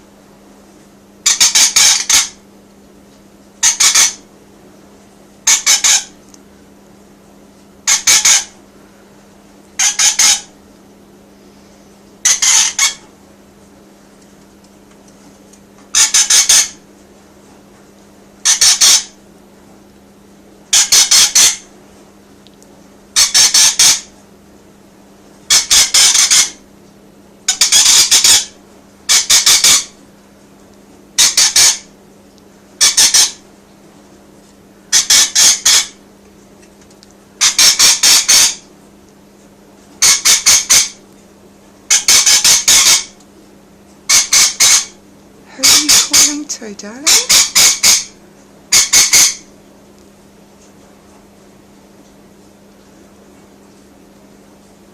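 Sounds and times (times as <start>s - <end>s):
lorikeet shrill screeches: 1.3s - 2.4s, 3.6s - 4.2s, 5.5s - 6.1s, 7.9s - 8.6s, 9.8s - 10.5s, 12.3s - 13.0s, 16.0s - 16.8s, 18.4s - 19.2s, 20.7s - 21.6s, 23.2s - 24.1s, 25.5s - 26.6s, 27.5s - 28.5s, 29.1s - 29.9s, 31.2s - 31.9s, 32.8s - 33.4s, 34.9s - 36.0s, 37.4s - 38.6s, 40.0s - 41.0s, 41.9s - 43.1s, 44.1s - 46.4s, 47.0s - 49.4s.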